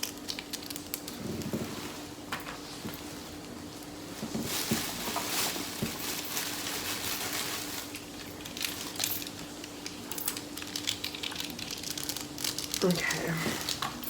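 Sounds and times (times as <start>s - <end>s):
plastic containers clicking and crinkling: 4.2s - 14.0s.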